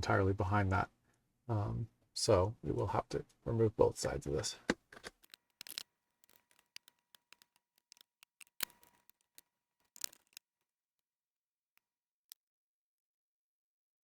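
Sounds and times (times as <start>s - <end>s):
small tools clicking and tapping: 5.0s - 10.6s.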